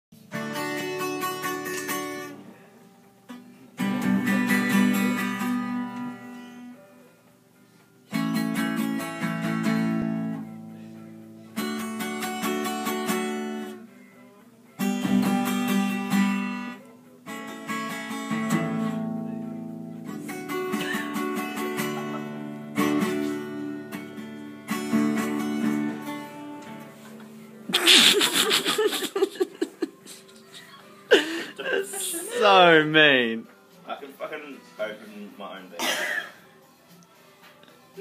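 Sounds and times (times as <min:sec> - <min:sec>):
acoustic guitar chords strummed: 0:00.2 - 0:07.2, 0:07.8 - 0:28.9, 0:32.3 - 0:33.9.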